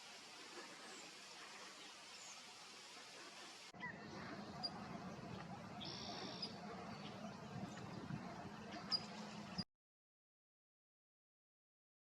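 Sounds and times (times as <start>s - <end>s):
outdoor background noise: 0.0s - 9.7s
birds chirping: 0.3s - 9.6s.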